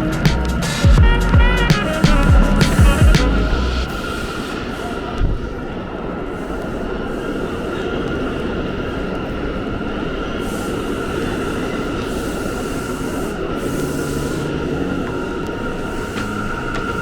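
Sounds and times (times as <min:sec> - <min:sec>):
high-pitched train whine: 0:00.0 - 0:17.0
subway train rumble: 0:00.0 - 0:17.0
train hiss: 0:01.8 - 0:17.0.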